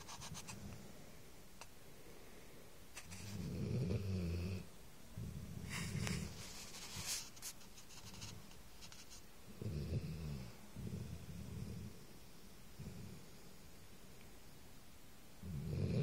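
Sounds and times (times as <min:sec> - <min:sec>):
pet snoring: 0:03.3 - 0:06.4, 0:09.6 - 0:12.0, 0:12.8 - 0:13.4, 0:15.4 - 0:16.0.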